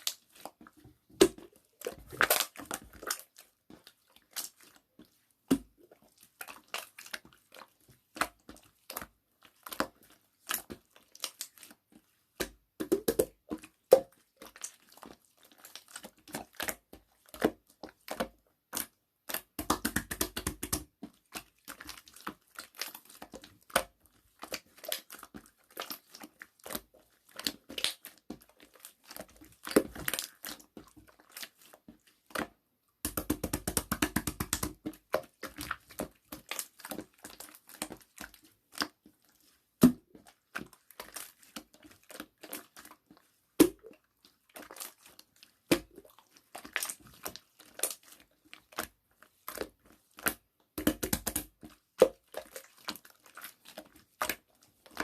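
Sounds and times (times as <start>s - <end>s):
slime squishing: 0.0s - 55.0s
sticky clicks and bubble pops: 12.4s - 14.1s, 18.8s - 20.9s, 33.0s - 36.5s, 50.3s - 52.2s.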